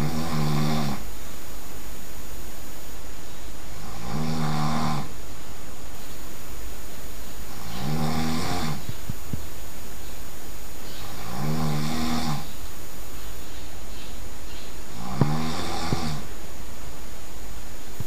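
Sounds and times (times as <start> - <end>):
person snoring loudly: 0.0 - 1.2, 3.7 - 5.2, 7.5 - 8.9, 11.0 - 12.5, 14.9 - 16.3
steady low hum: 0.0 - 18.0.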